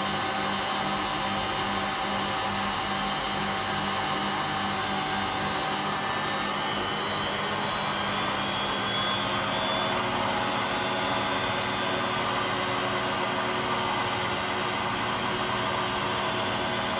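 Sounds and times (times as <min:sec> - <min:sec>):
washing machine whining: 0:04.5 - 0:16.9.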